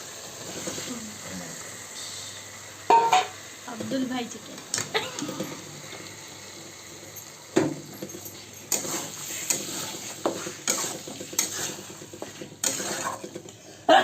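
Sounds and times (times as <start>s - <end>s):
chicken sizzling in hot oil: 0.0s - 13.9s
spatula scraping and knocking pan: 8.6s - 13.5s.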